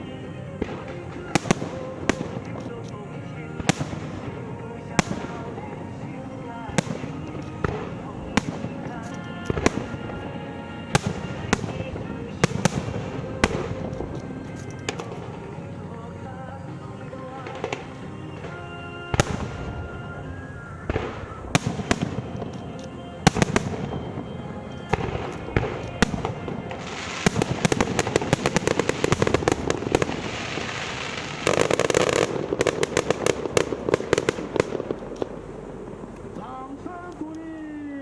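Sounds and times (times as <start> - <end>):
rapid firework crackling: 0.6 - 2.8, 3.4 - 15.6, 20.9 - 22.6, 23.2 - 36.2
firework shells bursting: 0.6 - 36.5.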